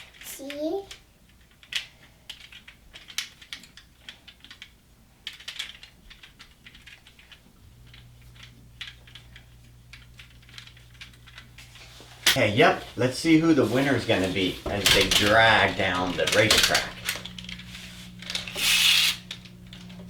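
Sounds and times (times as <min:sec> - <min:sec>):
metal toy cars clicking: 0:00.0 - 0:11.4.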